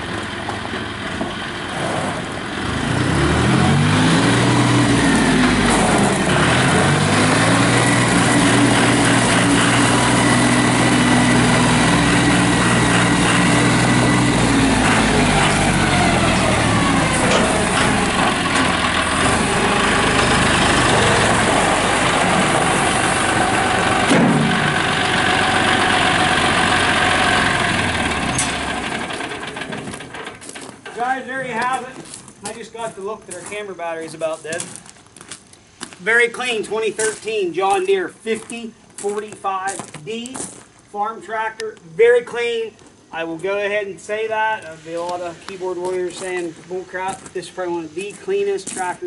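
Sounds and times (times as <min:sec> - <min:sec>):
high engine whine: 0:00.0 - 0:33.4
tractor diesel engine running: 0:00.0 - 0:35.2.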